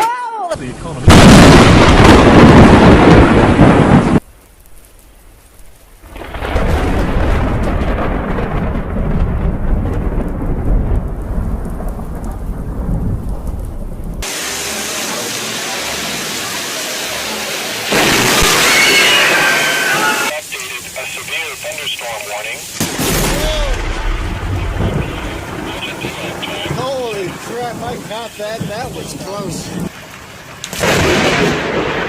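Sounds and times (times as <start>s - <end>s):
heavy rain: 0.0s - 32.0s
thunder: 1.1s - 4.2s, 6.0s - 14.4s, 17.9s - 19.6s, 22.8s - 29.9s, 30.7s - 32.0s.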